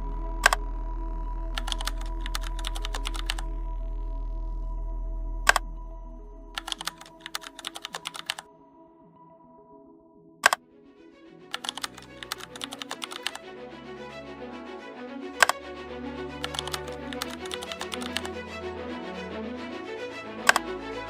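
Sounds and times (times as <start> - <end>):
low hum: 0.0 - 8.4, 15.4 - 21.0
soft background music: 0.0 - 21.0
keyboard typing clicks: 1.6 - 3.5, 6.6 - 8.4, 11.5 - 13.4, 16.4 - 18.3.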